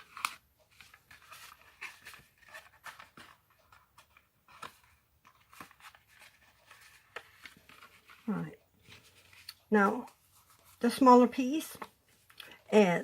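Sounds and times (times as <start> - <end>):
cardstock rustling and tapping: 0.0 - 12.4.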